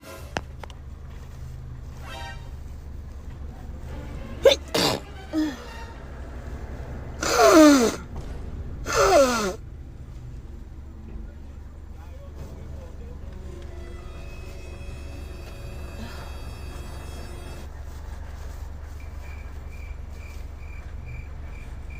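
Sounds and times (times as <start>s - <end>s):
steady low rumble: 0.1s - 21.9s
woman sneezing: 4.4s - 5.6s, 7.2s - 8.0s, 8.9s - 9.6s.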